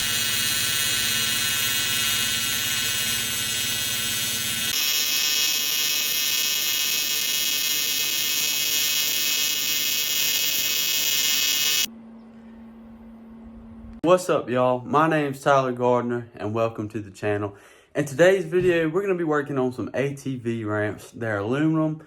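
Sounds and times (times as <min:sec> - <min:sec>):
welding arc buzzing: 0:00.0 - 0:11.9.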